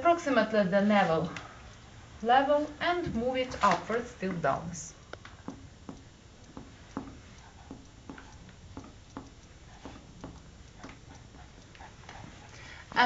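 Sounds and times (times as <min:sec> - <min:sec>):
soft finger taps: 0:05.1 - 0:12.2.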